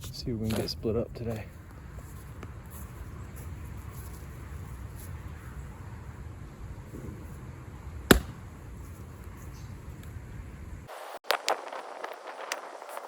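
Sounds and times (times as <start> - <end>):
axe cracking into log: 8.1 - 8.4.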